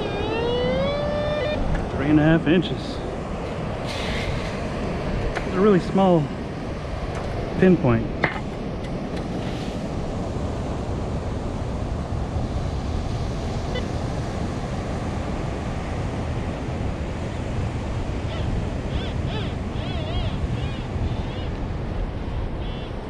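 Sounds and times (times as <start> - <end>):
faint warbling high tones: 0.0 - 2.1
ocean surf: 0.0 - 23.0
wind: 0.0 - 23.0.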